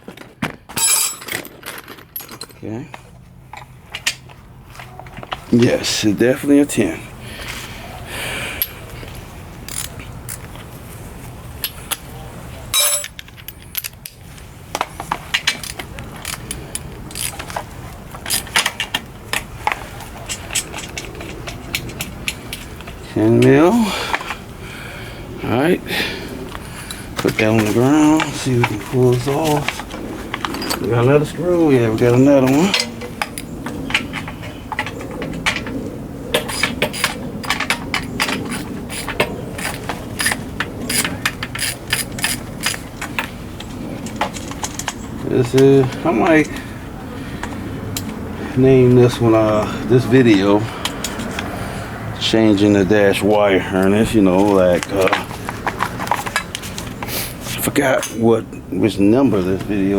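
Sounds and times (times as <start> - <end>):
metal tools clinking: 0.0 - 5.4, 12.7 - 14.1, 15.4 - 24.3, 27.2 - 35.7
ratchet wrench clicking: 9.7 - 10.5
hand tools clicking on metal: 9.7 - 10.6, 12.8 - 14.2, 14.8 - 24.3, 32.0 - 46.6.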